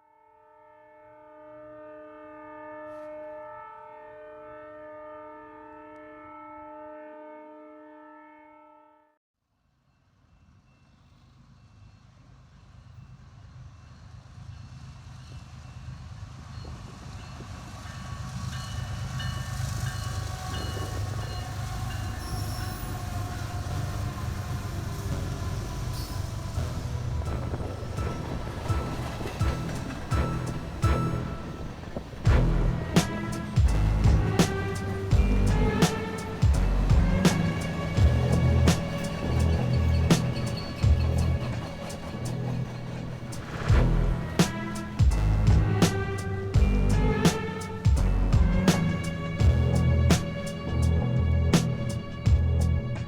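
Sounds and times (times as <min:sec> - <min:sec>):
locomotive air horn chord: 0:00.5 - 0:09.1, 0:19.2 - 0:50.5
freight train rumble: 0:10.3 - 0:53.0
high wheel squeals: 0:18.2 - 0:45.0.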